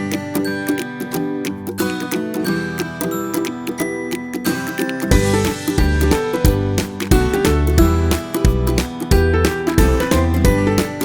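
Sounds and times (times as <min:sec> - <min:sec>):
plucked string notes: 0:00.0 - 0:11.0
upbeat background music: 0:00.0 - 0:11.0
bass line: 0:05.1 - 0:11.0.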